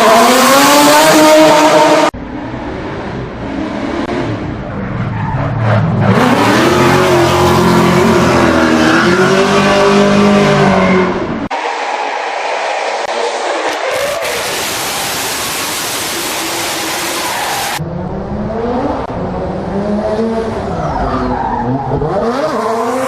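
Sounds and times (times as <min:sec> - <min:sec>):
car engine revving: 0:00.0 - 0:04.8, 0:05.6 - 0:11.5.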